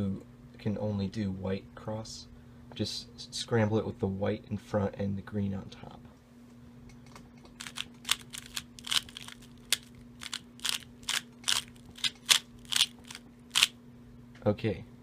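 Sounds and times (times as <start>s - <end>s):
plastic puzzle cube clacking: 7.6s - 13.7s.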